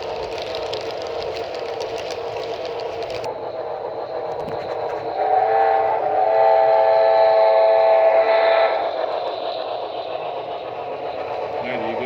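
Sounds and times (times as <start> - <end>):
steady steam hiss: 0.0 - 12.0
chime steam whistle: 5.1 - 9.0.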